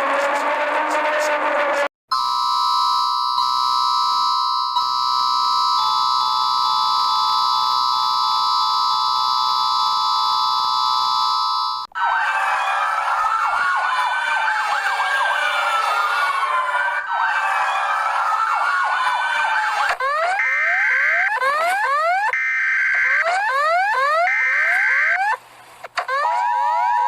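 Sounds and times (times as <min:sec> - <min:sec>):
siren wailing up and down: 0:00.0 - 0:25.4, 0:26.0 - 0:27.0
rising-sweep alarm: 0:02.1 - 0:11.9, 0:20.0 - 0:25.4.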